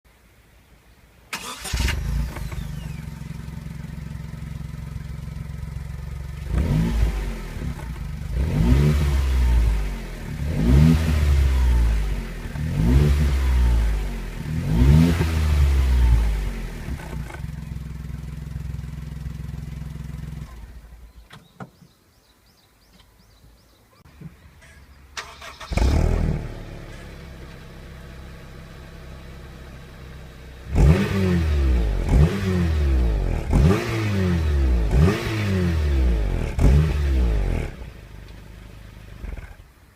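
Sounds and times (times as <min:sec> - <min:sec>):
car engine starting and idling: 0:01.3 - 0:21.4, 0:24.6 - 0:39.9
car engine revving: 0:01.4 - 0:20.8, 0:25.2 - 0:39.7.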